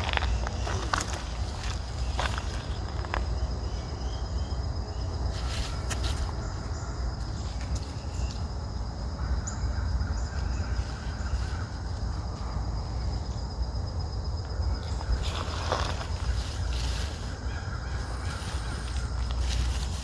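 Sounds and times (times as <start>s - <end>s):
high insect drone: 0.0s - 20.0s
animal or bird call: 14.8s - 20.0s.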